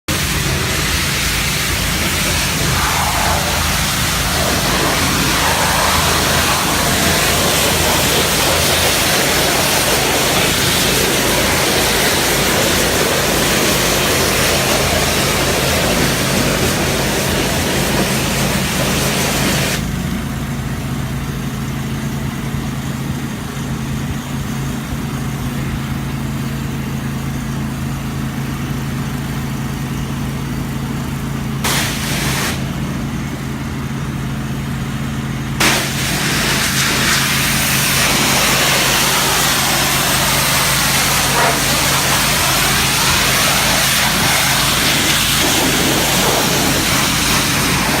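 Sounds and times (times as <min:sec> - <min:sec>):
pressure washer engine running: 0:00.0 - 0:48.0
pressure washer wand spraying: 0:00.1 - 0:19.8, 0:31.6 - 0:32.6, 0:35.6 - 0:48.0.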